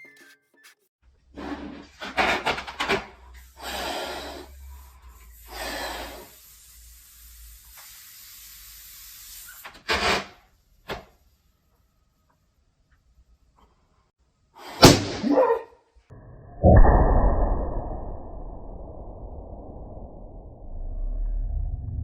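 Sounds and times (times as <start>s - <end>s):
hissing breaths into balloon: 3.3s - 9.7s.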